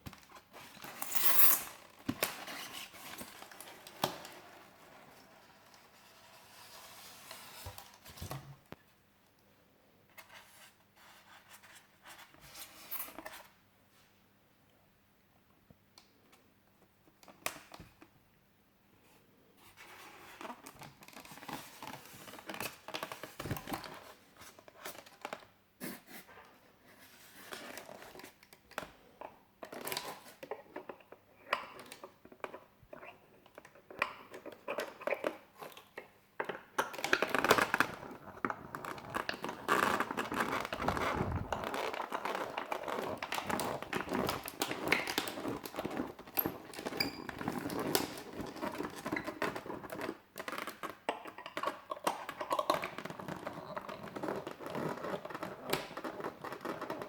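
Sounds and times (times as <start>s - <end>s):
plastic and paper crinkling: 37.0s - 50.9s.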